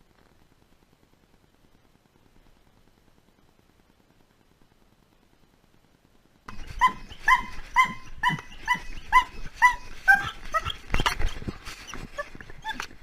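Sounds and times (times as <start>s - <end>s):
puppy whining and yelping: 6.5s - 13.0s.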